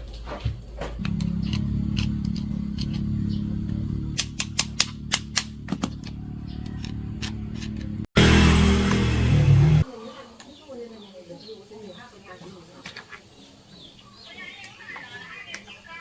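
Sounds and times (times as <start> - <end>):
machine hum: 0.9 - 9.8
harsh machine noise: 1.0 - 9.8
sharp clicks: 4.1 - 8.0.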